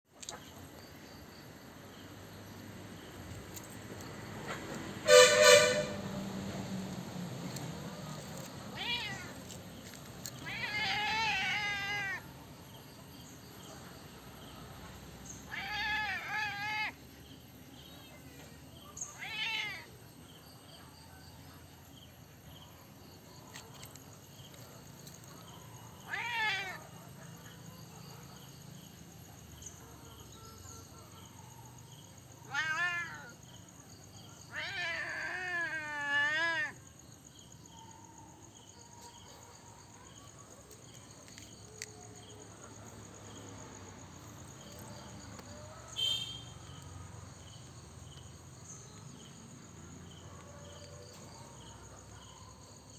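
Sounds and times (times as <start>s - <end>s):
cat meowing: 8.7s - 9.4s, 10.4s - 12.3s, 15.5s - 17.0s, 19.1s - 19.9s, 26.0s - 26.9s, 32.5s - 33.4s, 34.5s - 36.8s.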